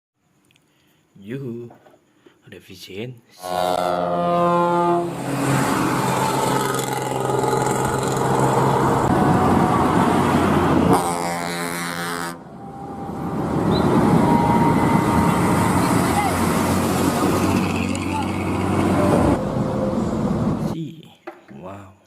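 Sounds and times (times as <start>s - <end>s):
buzzing horn-like tone: 3.4s - 20.2s.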